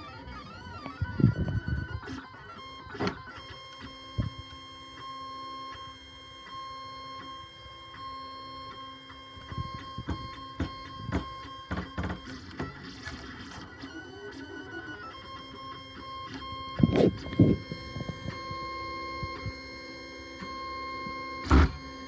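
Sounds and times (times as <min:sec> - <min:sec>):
stepper motors whining: 0:09.3 - 0:22.0
sharp clicks and knocks: 0:09.7 - 0:13.2.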